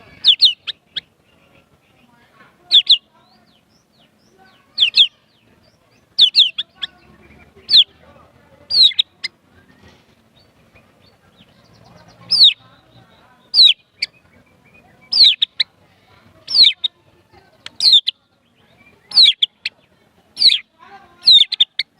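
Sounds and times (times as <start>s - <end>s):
bird singing high sliding notes: 4.4s - 8.0s.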